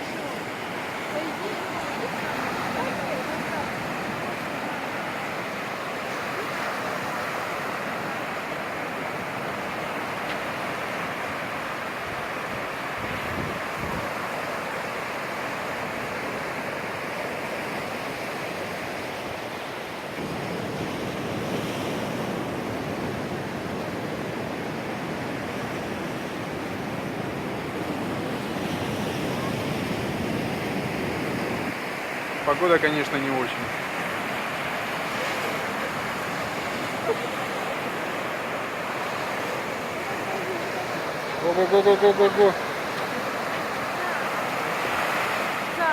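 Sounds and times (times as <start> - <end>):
surf washing onto beach: 0.0 - 45.9
wind on microphone: 12.2 - 14.3.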